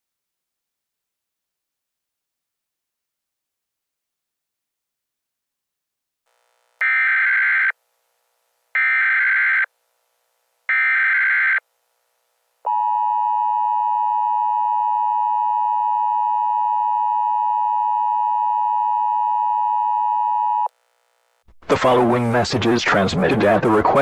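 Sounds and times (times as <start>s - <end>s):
data squawk bursts: 6.8s - 7.8s, 8.8s - 9.7s, 10.7s - 11.6s.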